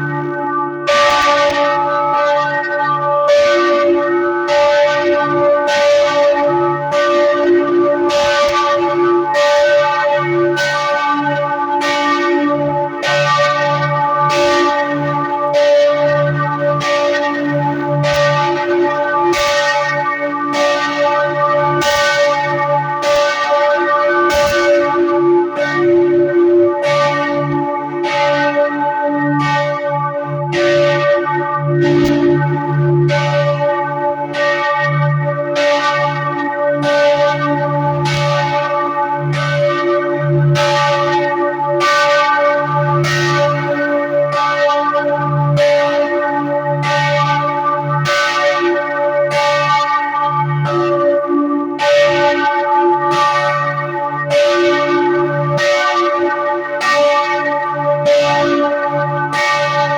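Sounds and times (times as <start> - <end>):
church bells ringing: 0.0 - 59.9.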